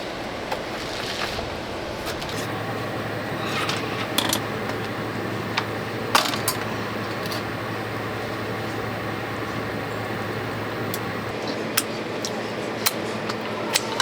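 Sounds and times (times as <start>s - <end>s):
low hum: 2.4s - 11.3s.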